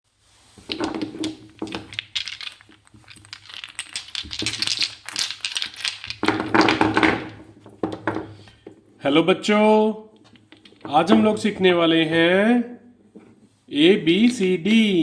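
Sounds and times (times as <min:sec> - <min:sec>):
small hard objects clattering: 0:00.5 - 0:08.4.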